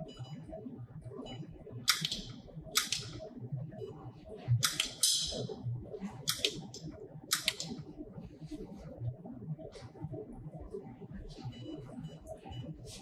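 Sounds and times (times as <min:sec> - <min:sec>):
laser welder sharp snaps: 0:01.9 - 0:03.2, 0:04.6 - 0:05.4, 0:06.3 - 0:07.8.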